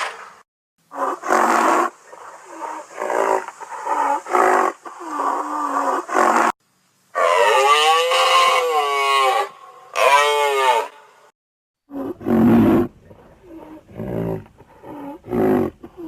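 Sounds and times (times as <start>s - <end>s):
creature long bellowing call: 7.1s - 11.0s, 11.9s - 16.0s.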